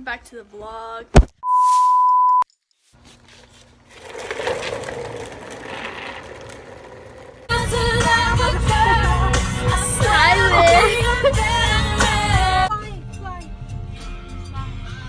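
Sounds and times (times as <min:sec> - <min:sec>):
bleep tone: 0:01.4 - 0:02.4.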